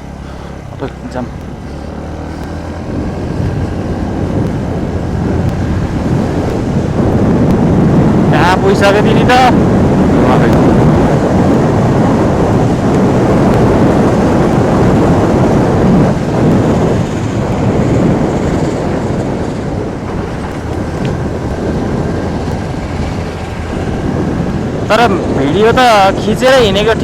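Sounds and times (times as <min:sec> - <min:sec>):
motorcycle engine running: 0:00.0 - 0:27.0
wind buffeting microphone: 0:00.0 - 0:27.0.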